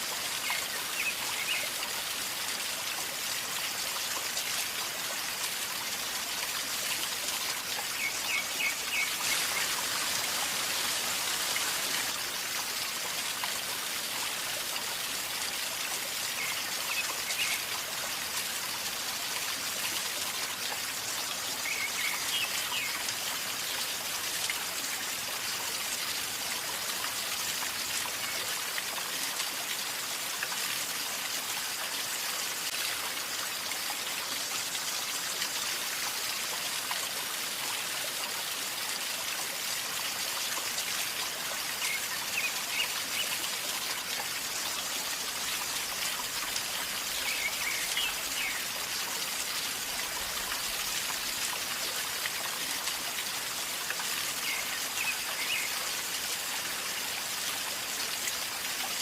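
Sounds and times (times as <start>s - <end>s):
river water gurgling: 0.0s - 59.0s.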